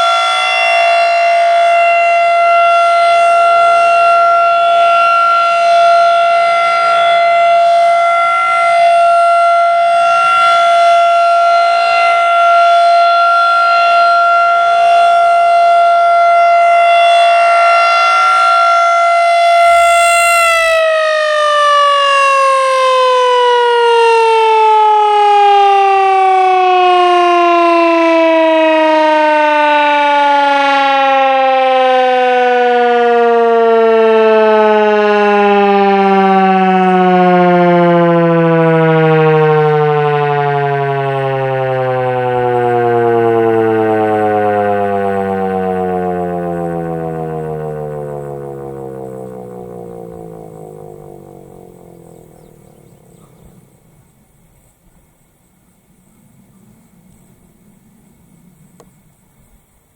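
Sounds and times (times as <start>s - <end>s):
warning siren winding down: 0.0s - 54.4s
brief noise: 19.2s - 21.2s.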